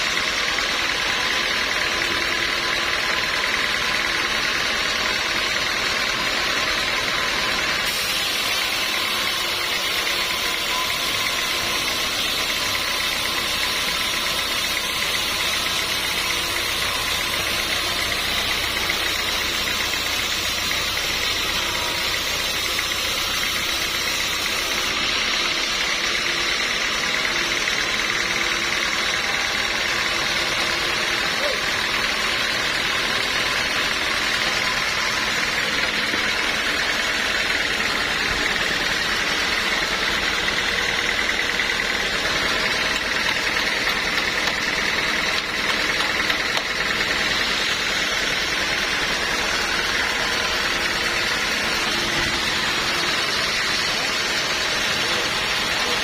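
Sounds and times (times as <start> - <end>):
saw blade cutting wood: 0.0 - 56.0
sawmill saw running: 0.0 - 56.0.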